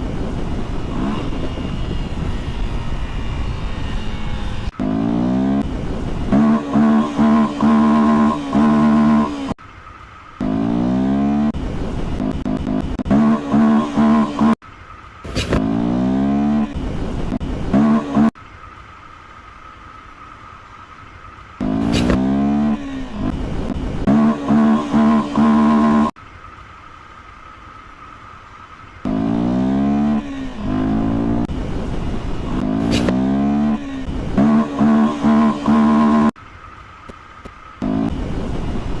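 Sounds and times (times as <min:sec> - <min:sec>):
motorcycle engine revving: 0:00.3 - 0:09.6, 0:10.4 - 0:14.6, 0:15.2 - 0:18.4, 0:21.5 - 0:26.2, 0:29.0 - 0:36.4, 0:37.8 - 0:39.0.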